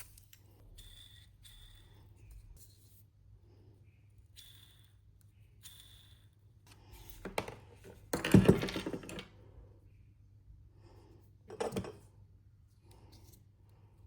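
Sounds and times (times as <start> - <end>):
angle grinder parts clattering: 7.1 - 9.3, 11.5 - 12.1.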